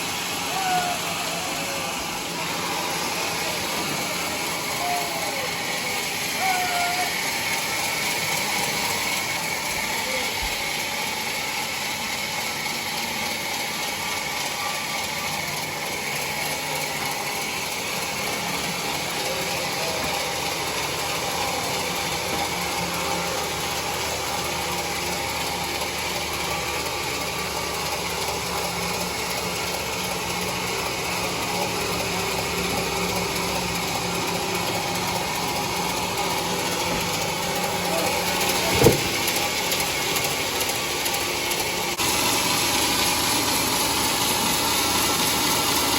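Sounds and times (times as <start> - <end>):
band saw machine whine: 0.0 - 45.9
saw blade rasping through log: 34.0 - 40.2.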